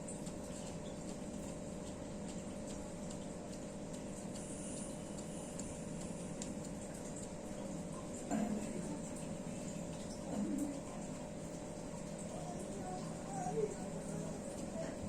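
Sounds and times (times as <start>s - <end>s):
faint ticking clicks: 0.0s - 8.2s
low room hum: 0.0s - 15.0s.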